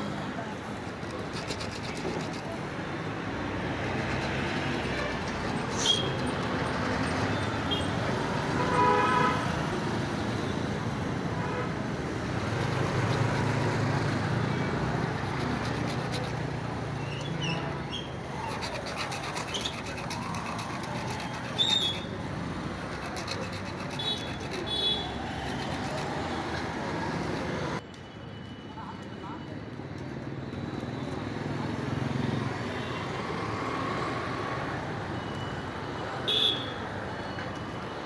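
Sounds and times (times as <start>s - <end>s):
road traffic noise: 0.0s - 38.0s
vehicle horn: 8.6s - 9.5s.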